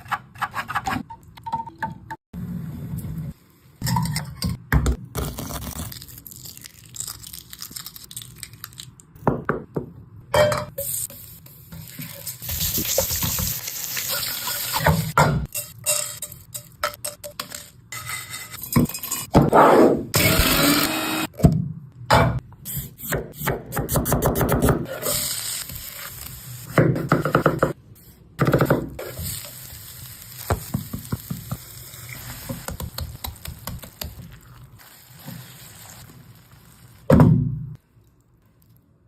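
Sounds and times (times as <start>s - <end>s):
oil sizzling: 10.9s - 15.2s, 24.9s - 26.8s, 29.0s - 37.1s.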